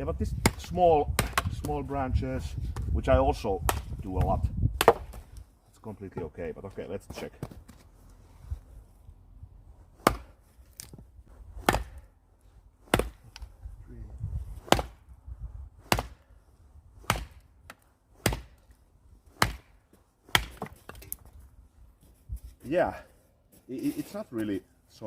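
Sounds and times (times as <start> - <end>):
blade chopping wood: 0.3 - 1.8, 3.6 - 5.3, 10.0 - 11.0, 11.6 - 12.1, 12.8 - 13.5, 14.6 - 15.0, 15.8 - 16.2, 17.0 - 21.2.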